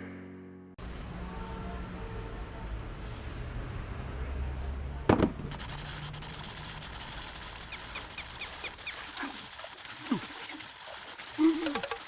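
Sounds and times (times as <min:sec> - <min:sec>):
crackling hiss: 0:05.5 - 0:12.0.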